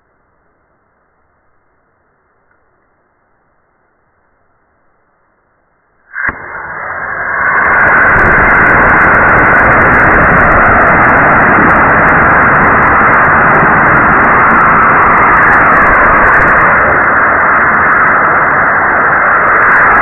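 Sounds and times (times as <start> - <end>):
rocket motor igniting pop: 6.1 - 13.4
rocket motor rushing hiss: 6.1 - 20.0.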